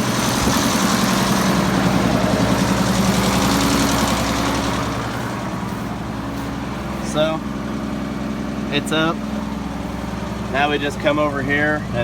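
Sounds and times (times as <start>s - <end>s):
tractor engine running: 0.0s - 12.0s.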